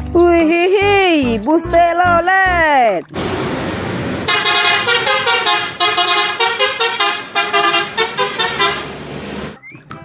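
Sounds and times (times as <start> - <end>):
rushing noise: 3.2 - 9.6
bus horn playing multi-tone tune: 4.2 - 9.6.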